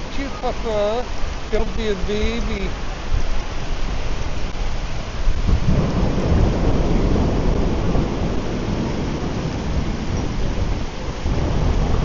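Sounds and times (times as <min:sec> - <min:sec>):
heavy rain pouring: 0:00.0 - 0:12.0
thunder rumbling: 0:04.5 - 0:12.0.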